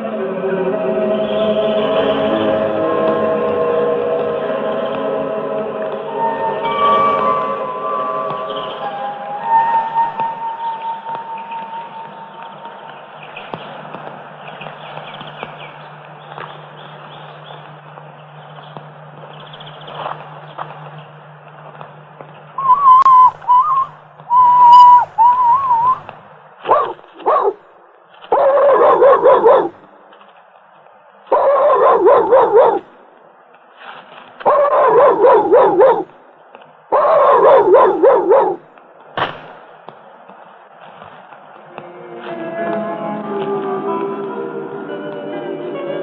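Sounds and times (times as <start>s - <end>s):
dog howling: 22.6s - 26.0s, 26.7s - 27.6s, 28.3s - 29.8s, 31.3s - 32.8s, 34.5s - 36.1s, 36.9s - 38.6s
dog whining: 22.6s - 26.0s, 26.7s - 27.6s, 28.4s - 29.8s, 31.3s - 32.8s, 34.5s - 36.1s, 37.0s - 38.6s.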